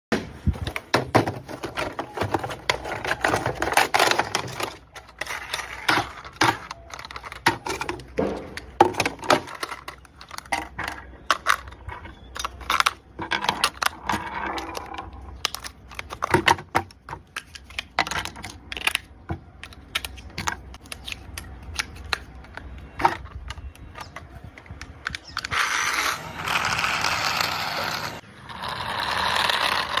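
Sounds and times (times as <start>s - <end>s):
cardboard and plastic rustling: 0.2s - 19.0s
packaging scraping: 1.2s - 13.0s.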